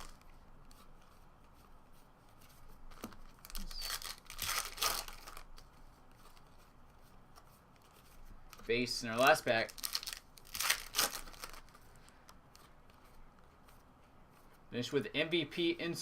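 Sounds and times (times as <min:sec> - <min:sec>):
foil wrapper crinkling and tearing: 0:03.4 - 0:05.6, 0:09.2 - 0:11.8.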